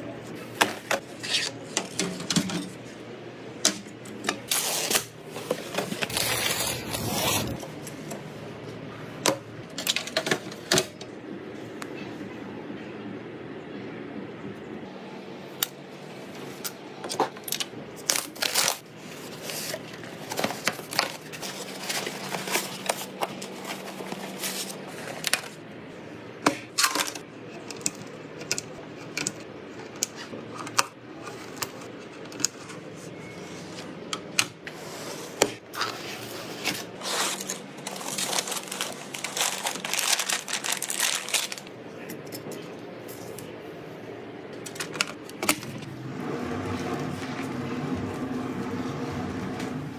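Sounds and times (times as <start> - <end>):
computer parts clicking and rustling: 0.6 - 2.9, 3.6 - 8.3, 9.2 - 11.1, 16.4 - 25.6, 26.4 - 34.6, 36.6 - 43.5, 44.5 - 48.2.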